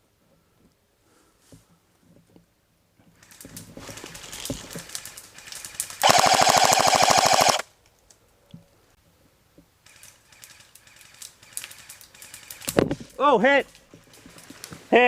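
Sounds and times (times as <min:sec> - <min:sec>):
airsoft guns clicking: 0:03.2 - 0:08.2
airsoft machine gun burst: 0:05.4 - 0:07.6.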